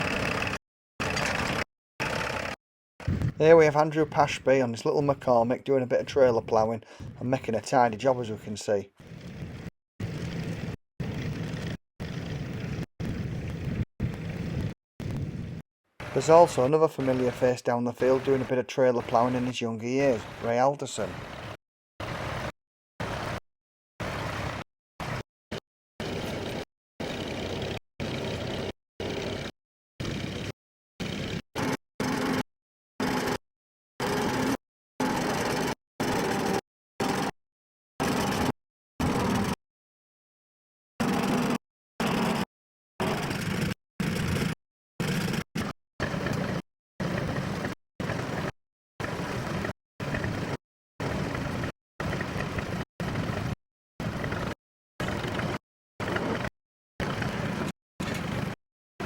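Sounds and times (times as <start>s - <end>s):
tractor engine running: 0.0s - 3.4s, 16.0s - 18.5s, 24.0s - 25.2s, 26.0s - 30.5s, 31.1s - 32.4s, 33.0s - 33.4s, 34.0s - 37.3s, 38.0s - 39.6s, 41.0s - 42.3s.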